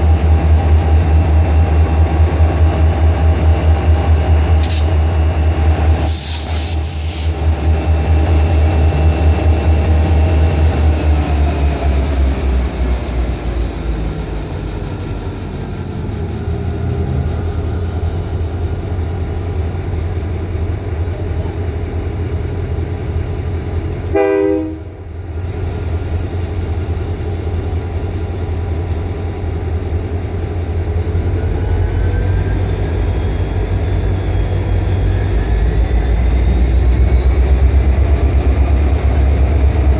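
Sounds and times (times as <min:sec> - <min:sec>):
diesel locomotive engine rumble: 0:00.0 - 0:39.9
train horn blast: 0:24.1 - 0:25.0.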